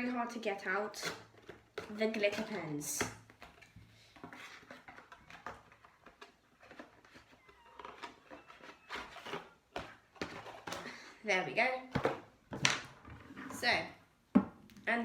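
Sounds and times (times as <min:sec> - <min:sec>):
packaging rustling and crinkling: 0:03.4 - 0:10.8.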